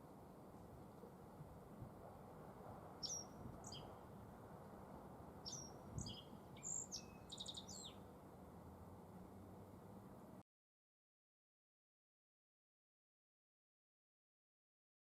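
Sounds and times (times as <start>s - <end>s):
bunting singing: 3.0s - 4.0s, 5.4s - 8.0s.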